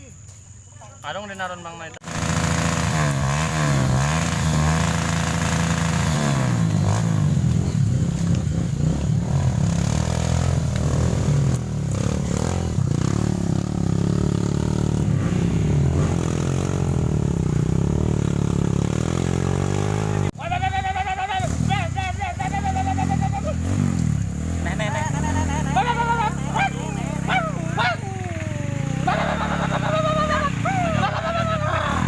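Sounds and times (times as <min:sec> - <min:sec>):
motorcycle engine revving: 0:02.0 - 0:32.0.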